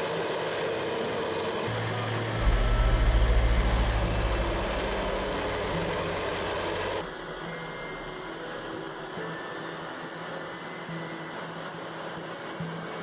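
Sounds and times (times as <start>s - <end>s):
mulch grinder engine pulsing: 0.0s - 8.8s.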